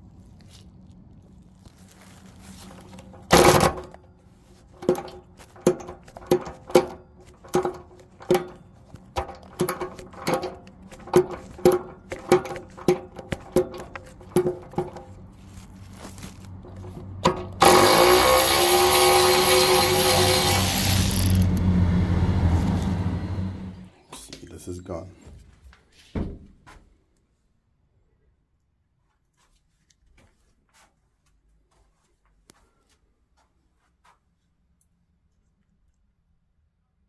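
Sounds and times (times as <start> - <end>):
loud continuous mechanical noise: 1.9 - 23.9.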